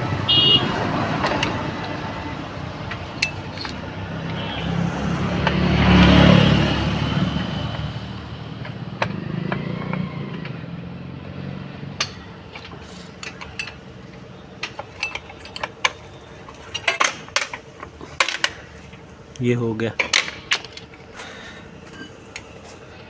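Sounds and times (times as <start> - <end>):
vehicle engine passing: 0.0 - 14.4
metallic clinks of tools: 3.1 - 3.9.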